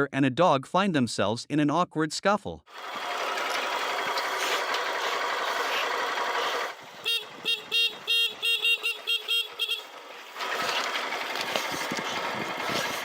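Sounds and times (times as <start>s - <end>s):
short honking animal calls: 5.5s - 10.6s.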